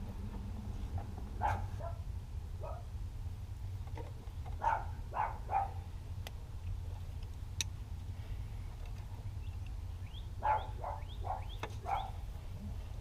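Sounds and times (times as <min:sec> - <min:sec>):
steady low rumble: 0:00.0 - 0:13.0
dog yipping: 0:01.4 - 0:02.0, 0:04.6 - 0:05.8, 0:10.4 - 0:12.2.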